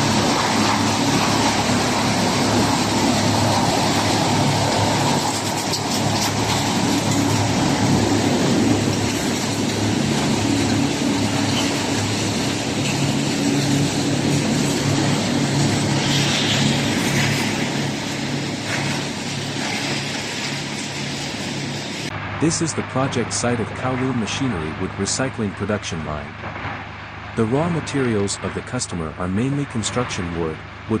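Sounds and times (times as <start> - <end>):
low hum: 0.0 - 30.9
wood-crushing machinery drone: 0.0 - 31.0.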